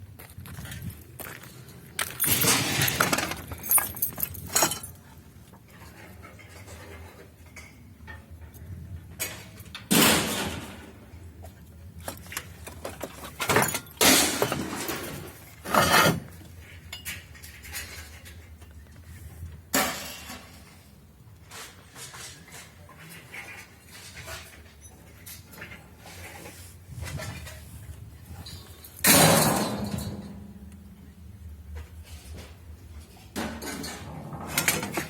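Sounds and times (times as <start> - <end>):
metal objects clattering: 2.0 - 8.3, 12.0 - 18.9, 28.3 - 30.8, 33.3 - 35.0.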